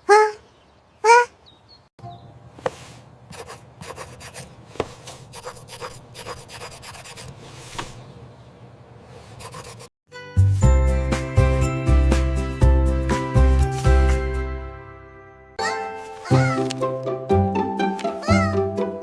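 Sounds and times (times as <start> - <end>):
rubbing and scratching: 2.6 - 8.1, 9.1 - 9.9.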